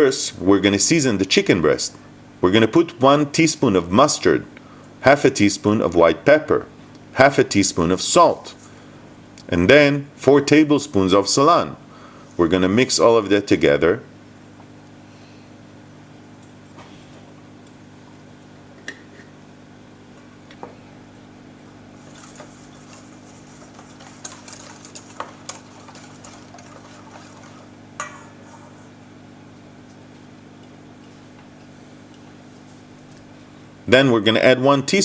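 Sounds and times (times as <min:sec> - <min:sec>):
steady low hum: 0:00.0 - 0:35.0
utensil mixing wet marinade: 0:21.9 - 0:29.1
utensil clinking against bowl: 0:23.7 - 0:28.9.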